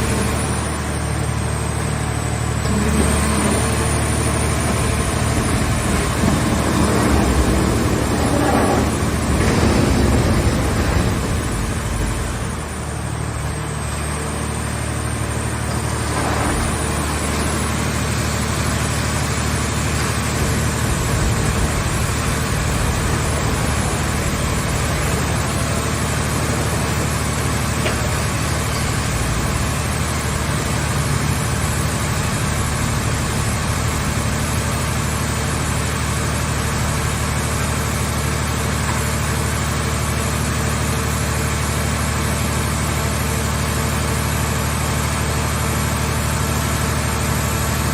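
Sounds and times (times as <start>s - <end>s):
baler engine droning: 0.0s - 34.2s.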